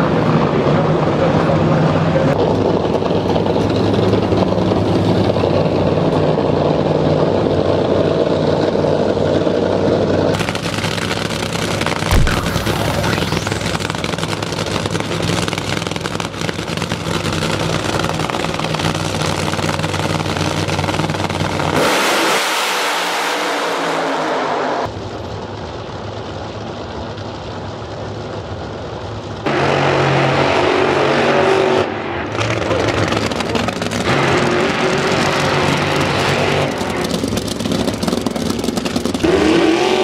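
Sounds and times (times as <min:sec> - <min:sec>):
drag racing engines running: 0:00.0 - 0:40.0
engine full-throttle blast: 0:10.4 - 0:19.2.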